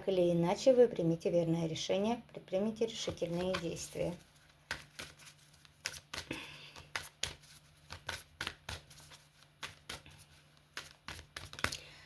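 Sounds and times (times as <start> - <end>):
cards flicking and slapping: 4.5 - 11.9.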